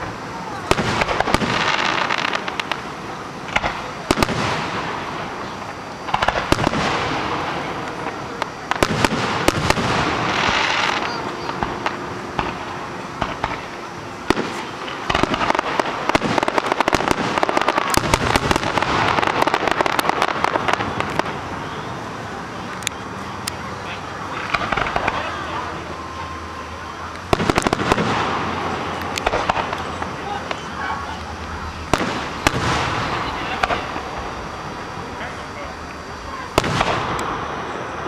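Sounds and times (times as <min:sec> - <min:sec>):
fireworks crackling: 0:00.0 - 0:38.0
fireworks shells bursting: 0:00.0 - 0:38.0.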